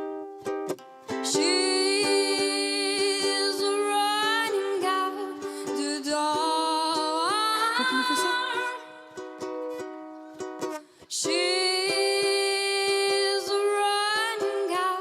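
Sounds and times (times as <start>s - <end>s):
strummed string accompaniment: 0.0s - 15.0s
person singing long wordless notes: 1.3s - 9.3s.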